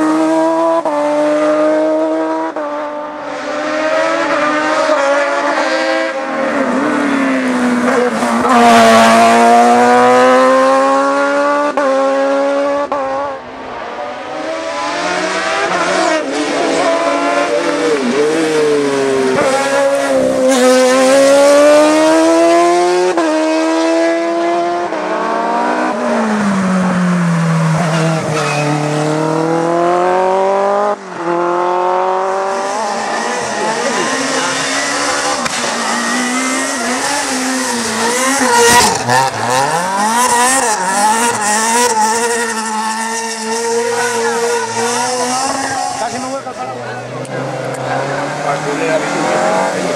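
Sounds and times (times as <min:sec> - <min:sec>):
race car engine accelerating: 0:00.0 - 0:49.9.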